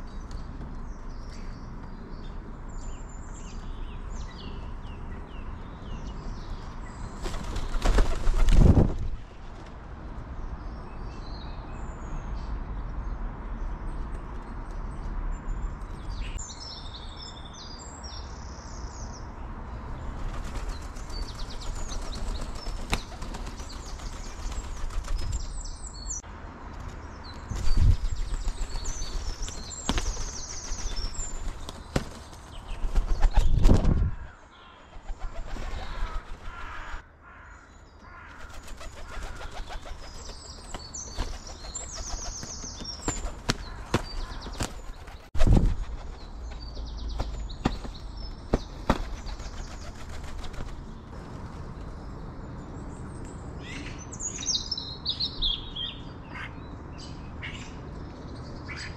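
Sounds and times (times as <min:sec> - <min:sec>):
birds chirping: 0:20.0 - 0:26.3, 0:26.9 - 0:51.2.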